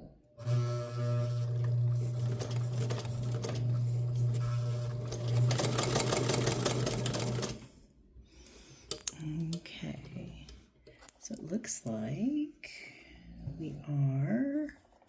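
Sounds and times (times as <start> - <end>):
sewing machine motor hum: 0.4 - 7.7
sewing needle mechanical chatter: 1.6 - 7.6.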